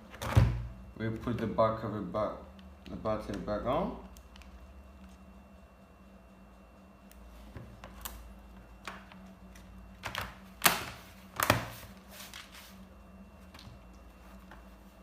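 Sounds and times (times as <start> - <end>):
plastic laptop cover clicks: 10.0 - 11.8.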